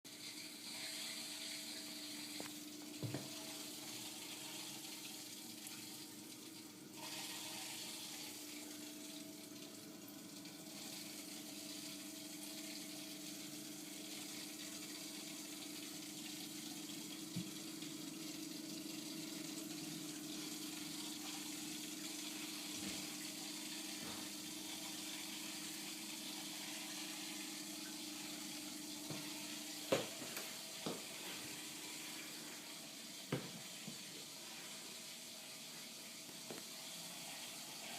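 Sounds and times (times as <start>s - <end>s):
water hissing through pipes: 0.0s - 37.9s.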